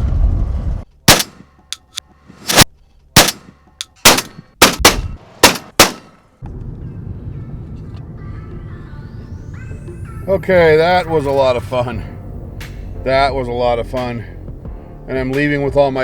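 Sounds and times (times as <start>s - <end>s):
shotgun blasts with echo: 1.1s - 1.6s, 3.2s - 6.2s.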